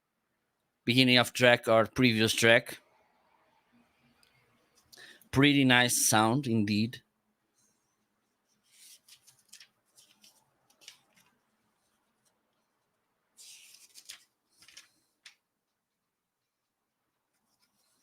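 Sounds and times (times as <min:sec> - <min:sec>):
scratchy rustling: 0:08.4 - 0:12.4, 0:13.4 - 0:15.4.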